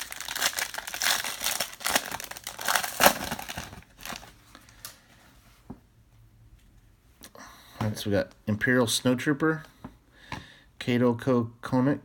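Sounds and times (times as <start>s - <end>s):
card pack wrapper crinkling and tearing: 0.0s - 5.0s.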